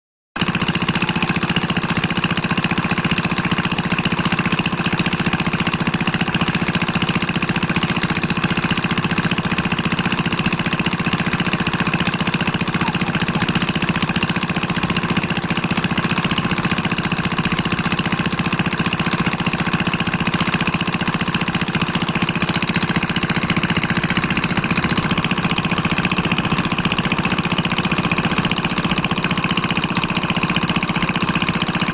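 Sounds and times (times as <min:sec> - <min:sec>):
engine running steadily: 0:00.4 - 0:31.9.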